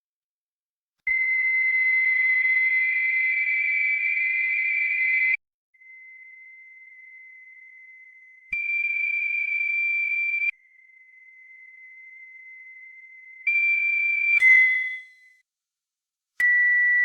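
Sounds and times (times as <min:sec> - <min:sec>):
high-pitched electronic beep: 0:14.4 - 0:15.2.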